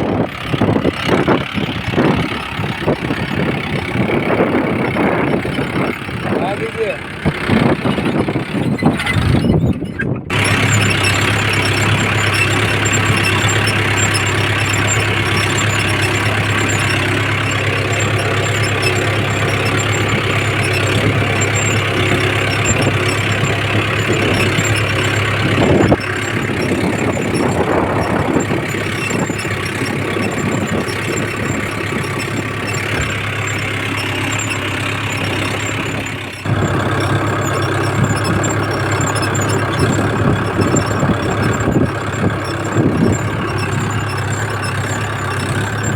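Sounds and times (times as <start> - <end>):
tractor diesel engine running: 0.0 - 45.9.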